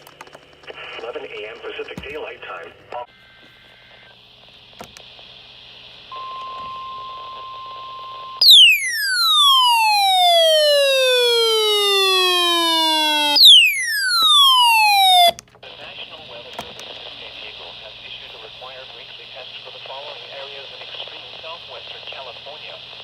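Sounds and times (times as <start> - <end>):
steady warning alarm tone: 6.1 - 15.4
falling siren-like alarm sweep: 8.4 - 15.4.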